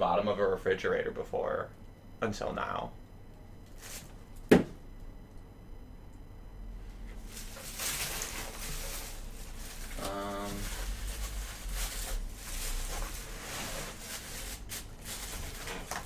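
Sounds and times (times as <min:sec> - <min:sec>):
packaging rustling and scraping: 0:03.7 - 0:04.4, 0:07.1 - 0:16.0.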